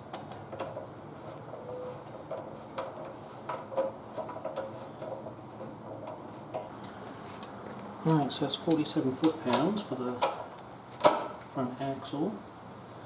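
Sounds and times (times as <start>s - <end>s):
light metallic clicks and knocks: 0.0s - 0.9s, 7.4s - 11.5s.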